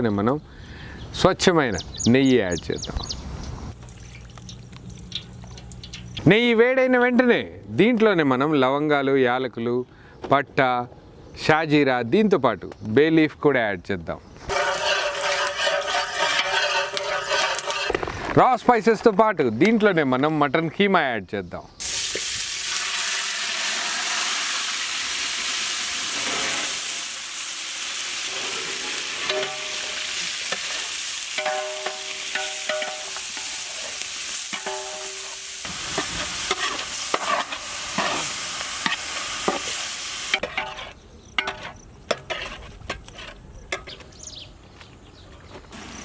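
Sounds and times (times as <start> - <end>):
knocks and scrapes against pot: 14.5 - 18.4, 40.4 - 44.0
meat sizzling in ghee: 21.8 - 40.4.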